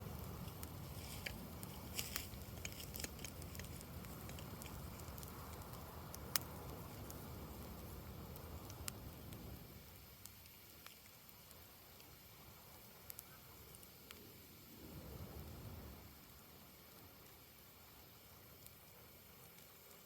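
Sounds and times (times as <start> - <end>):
campfire wood crackling and popping: 0.0 - 20.0.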